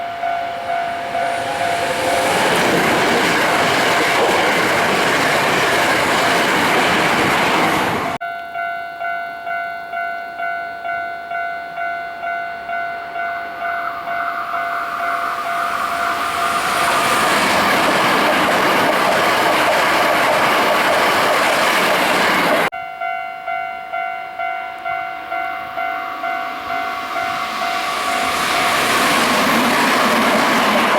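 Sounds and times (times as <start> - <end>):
level-crossing warning bell ringing: 0.0 - 7.4, 8.1 - 19.5, 21.1 - 30.9
train rushing past: 0.0 - 8.2, 13.5 - 22.7, 25.6 - 30.9.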